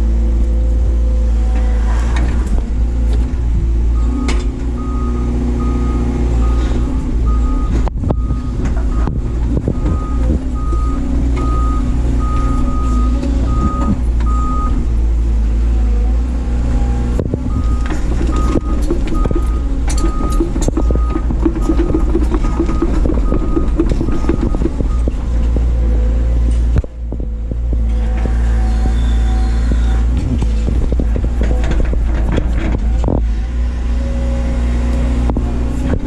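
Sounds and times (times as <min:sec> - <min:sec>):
excavator diesel engine running: 0:00.0 - 0:36.0
backup alarm beeping: 0:17.5 - 0:25.1.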